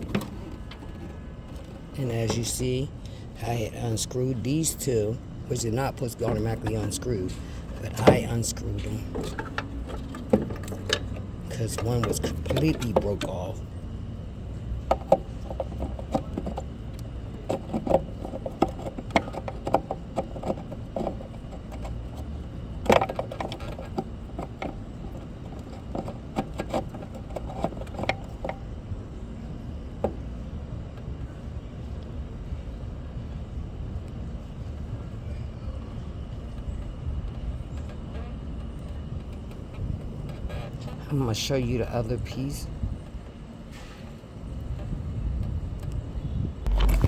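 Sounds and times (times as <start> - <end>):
low outdoor rumble: 0.0 - 47.0.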